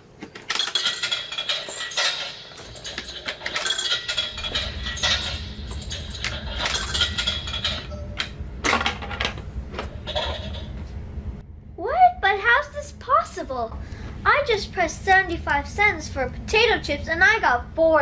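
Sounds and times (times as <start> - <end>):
low steady hum: 0.0 - 18.0
toy vending machine clicking: 0.3 - 10.6.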